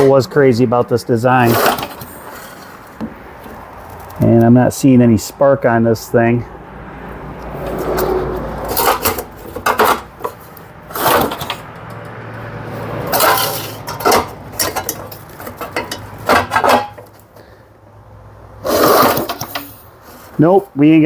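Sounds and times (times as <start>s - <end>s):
recoil starter cord pulled: 8.7s - 12.1s.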